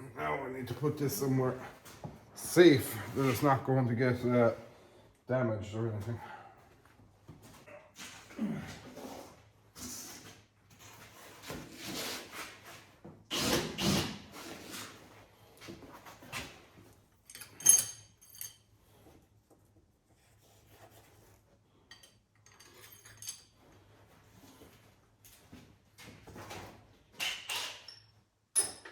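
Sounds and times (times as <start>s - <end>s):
ringing metal clinks: 17.3s - 18.7s, 21.9s - 23.6s, 27.9s - 28.9s.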